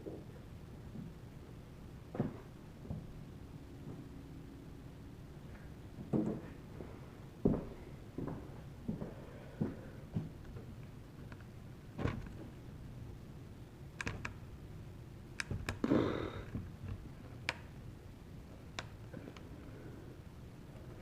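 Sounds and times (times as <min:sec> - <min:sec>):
small clicks and taps of parts: 0:14.0 - 0:14.4, 0:15.4 - 0:17.7.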